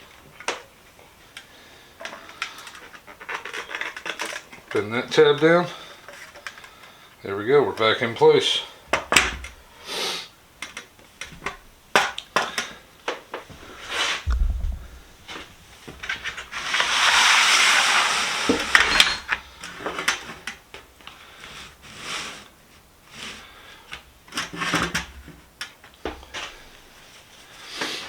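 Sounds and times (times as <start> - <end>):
hiss: 9.8 - 10.3, 16.7 - 18.7, 27.6 - 28.0.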